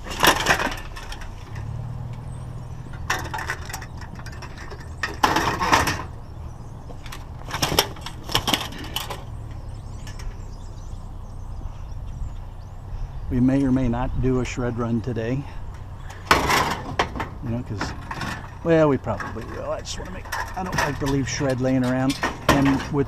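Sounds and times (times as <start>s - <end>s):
scrap metal clattering: 0.0s - 6.2s, 7.0s - 9.4s, 16.0s - 23.0s
low engine hum: 0.0s - 23.0s.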